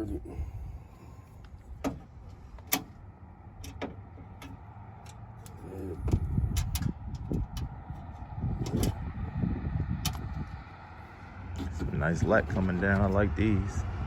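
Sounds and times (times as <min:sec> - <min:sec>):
tools clicking and knocking: 0:03.6 - 0:09.0.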